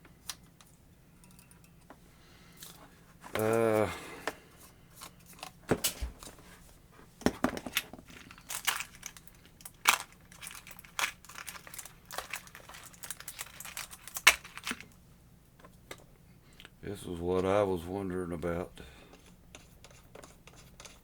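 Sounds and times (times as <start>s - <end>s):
plastic crinkling: 7.6s - 15.0s.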